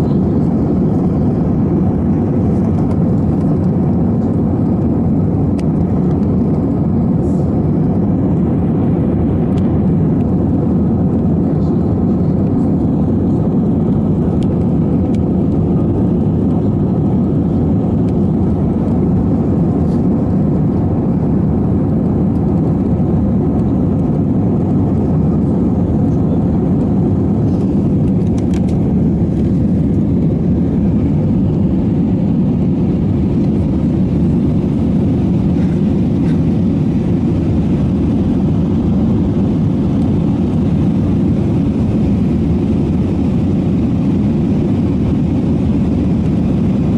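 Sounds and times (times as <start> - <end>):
jet engine drone in cabin: 0.0 - 46.9.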